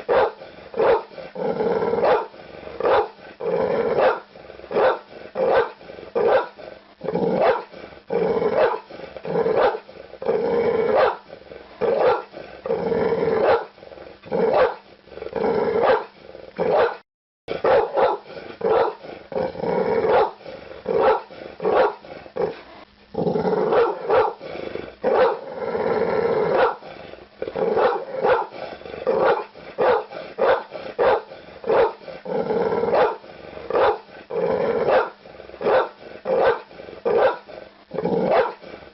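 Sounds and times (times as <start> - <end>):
dog barking: 0.0 - 1.1, 2.0 - 3.2, 4.0 - 6.6, 7.4 - 7.7, 8.6 - 8.9, 9.6 - 9.8, 10.9 - 11.2, 11.9 - 12.3, 13.4 - 13.7, 14.5 - 14.8, 15.8 - 16.1, 16.7 - 17.0, 17.6 - 19.0, 20.1 - 20.4, 21.0 - 22.0, 23.7 - 24.4, 25.1 - 25.4, 26.5 - 26.8, 27.8 - 28.6, 29.2 - 32.0, 32.9 - 33.2, 33.8 - 34.0, 34.9 - 37.5, 38.3 - 38.6.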